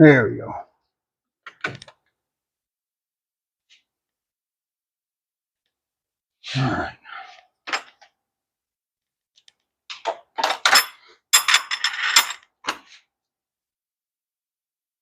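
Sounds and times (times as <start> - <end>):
metal tools clinking: 10.4 - 12.4.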